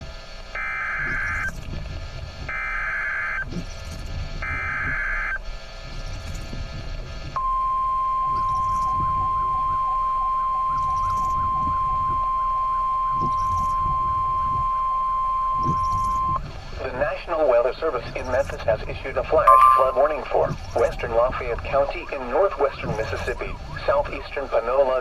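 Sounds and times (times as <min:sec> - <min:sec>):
steady warning alarm tone: 0:00.5 - 0:01.6, 0:02.5 - 0:05.5, 0:07.4 - 0:16.6, 0:19.5 - 0:24.0.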